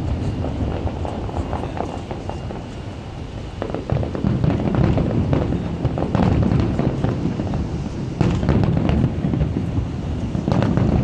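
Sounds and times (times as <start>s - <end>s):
fireworks booming and crackling: 0.0s - 11.0s
sharp firework bang: 3.4s - 11.0s.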